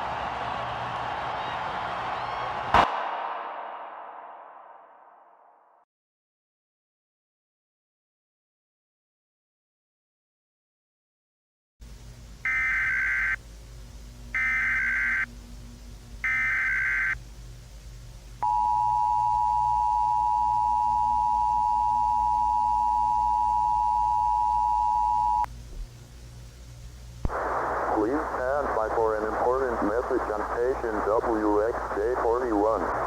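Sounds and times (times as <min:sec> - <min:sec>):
low hum: 0:02.8 - 0:05.8, 0:13.4 - 0:33.0
data tone bursts: 0:18.4 - 0:25.5
two-tone attention signal: 0:18.4 - 0:25.5.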